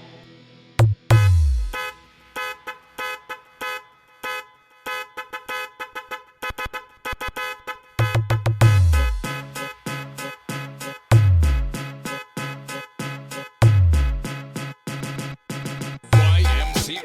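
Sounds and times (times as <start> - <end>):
deep bass kick drum: 0.8 - 1.8, 8.0 - 9.4, 11.1 - 11.8, 13.6 - 14.3, 16.2 - 16.9
horn-like synth stabs: 1.1 - 17.0.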